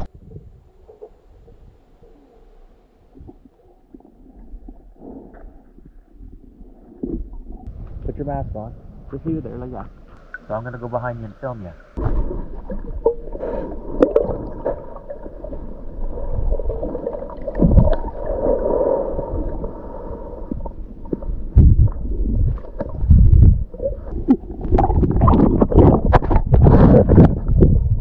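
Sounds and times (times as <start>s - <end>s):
underwater river gurgling: 0.0s - 7.8s, 8.8s - 28.0s
low thumps: 7.0s - 28.0s
water splashing and churning: 9.8s - 28.0s.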